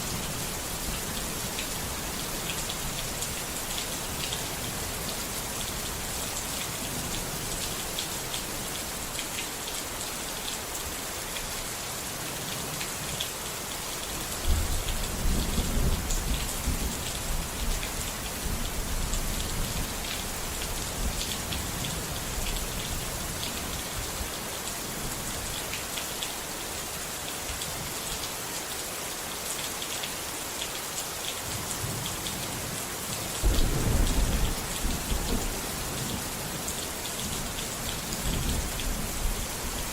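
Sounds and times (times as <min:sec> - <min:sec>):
heavy rain falling: 0:00.0 - 0:39.9
thunder rolling: 0:33.4 - 0:35.6.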